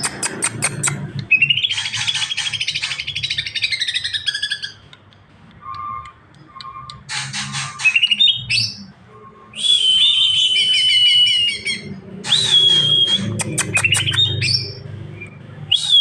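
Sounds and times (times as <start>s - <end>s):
bird singing with whistles: 1.3s - 4.8s, 7.8s - 8.9s, 9.5s - 16.0s.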